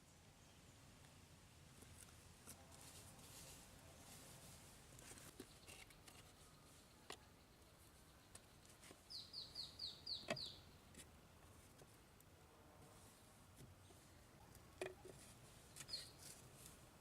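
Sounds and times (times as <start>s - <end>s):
small bird calling: 5.3s - 11.0s, 14.9s - 16.4s.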